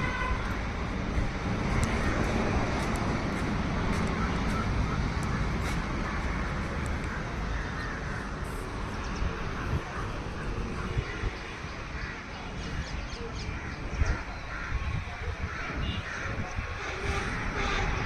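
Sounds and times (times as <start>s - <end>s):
road traffic rumble: 0.0s - 18.0s.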